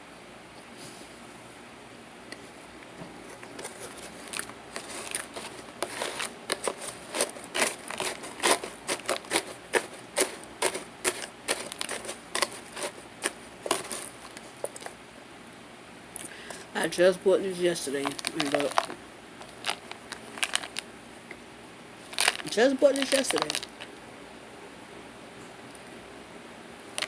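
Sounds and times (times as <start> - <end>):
starch lumps crunching: 3.2 - 15.0, 17.8 - 20.8, 22.0 - 23.9.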